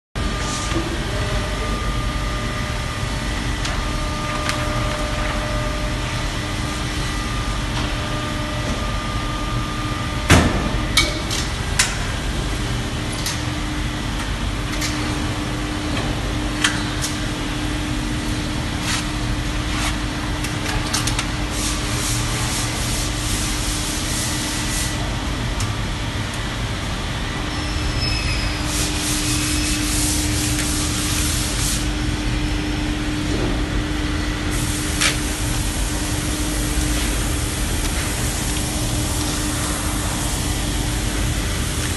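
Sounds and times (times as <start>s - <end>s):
hissing air: 34.5s - 41.9s.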